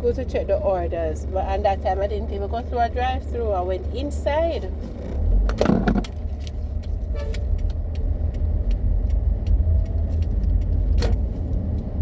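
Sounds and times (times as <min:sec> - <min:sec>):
car cabin rumble while moving: 0:00.0 - 0:12.0.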